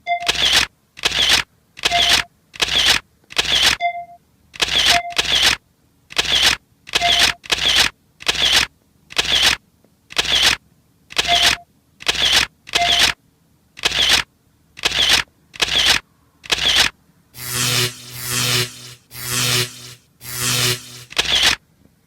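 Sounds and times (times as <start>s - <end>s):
brief beep: 0.0s - 0.4s, 3.8s - 4.2s, 4.9s - 5.2s.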